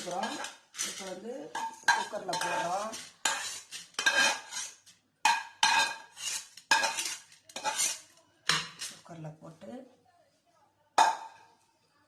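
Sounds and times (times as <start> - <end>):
metal spoon clinking on metal pots: 0.0 - 9.0.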